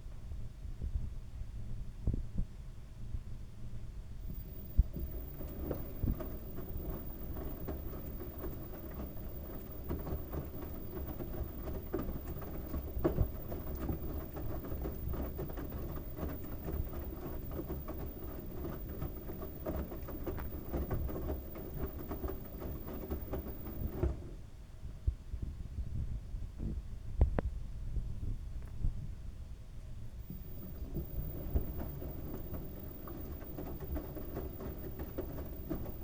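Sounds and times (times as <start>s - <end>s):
washing machine drum tumbling: 4.2s - 24.3s, 30.2s - 36.0s
small irregular knocks: 4.3s - 24.2s, 30.3s - 36.0s.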